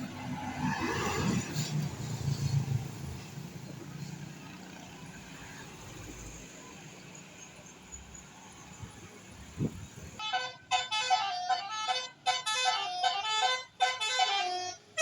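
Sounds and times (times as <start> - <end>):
vehicle engine passing by: 0.0 - 6.9
background traffic noise: 0.0 - 15.0.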